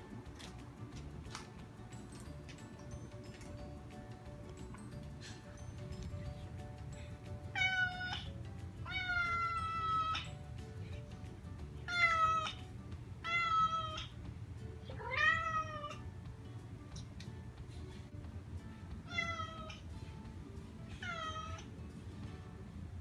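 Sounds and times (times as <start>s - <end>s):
faint background music: 0.0s - 23.0s
cat meowing: 7.5s - 10.3s, 11.9s - 12.6s, 13.2s - 14.2s, 14.9s - 16.0s, 19.1s - 19.8s, 20.9s - 21.7s.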